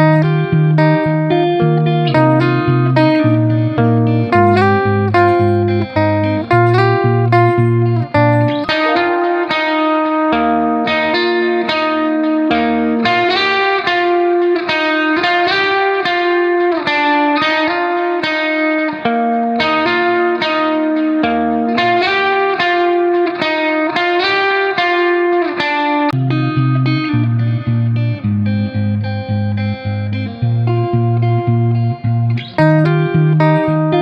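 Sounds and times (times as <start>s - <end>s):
deep bass line: 0.0s - 8.8s, 26.2s - 34.0s
plucked guitar melody: 0.0s - 34.0s.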